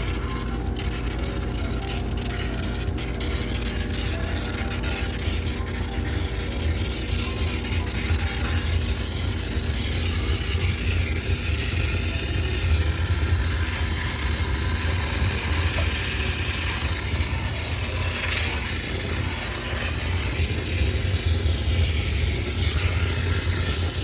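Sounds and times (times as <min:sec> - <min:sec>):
low machine hum: 0:00.0 - 0:24.0
steam hissing: 0:07.6 - 0:24.0.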